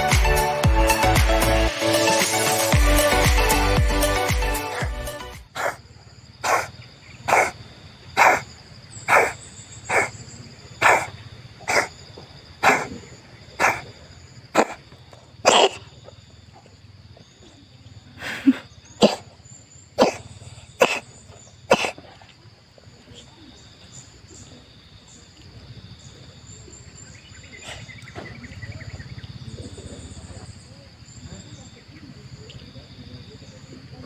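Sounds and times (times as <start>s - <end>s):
cat coughing: 5.6s - 5.8s, 6.4s - 6.7s, 7.3s - 7.5s, 8.2s - 8.4s, 9.1s - 10.1s, 10.8s - 11.1s, 11.7s - 11.9s, 12.6s - 12.9s, 13.6s - 13.8s, 14.6s - 14.8s, 15.5s - 15.8s, 19.0s - 19.2s, 20.0s - 20.2s, 20.8s - 21.0s, 21.7s - 22.0s.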